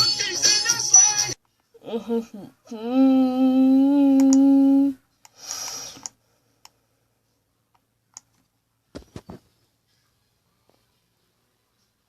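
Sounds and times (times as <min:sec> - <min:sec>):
short breathy hiss: 0:05.3 - 0:06.1.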